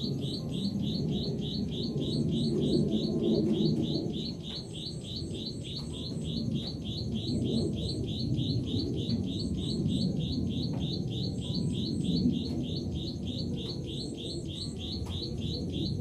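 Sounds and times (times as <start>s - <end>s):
rapid high-pitched chirps: 0.0s - 16.0s.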